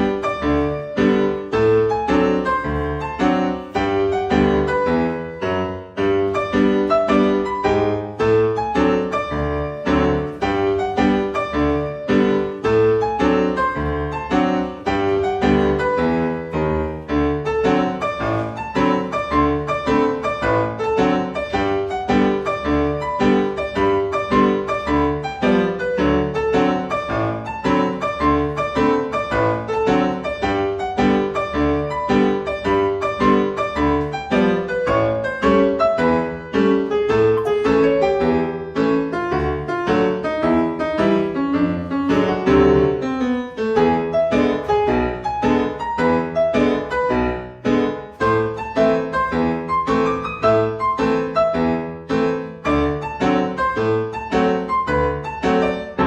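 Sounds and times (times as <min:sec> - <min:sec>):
piano dance music: 0:00.0 - 0:56.0.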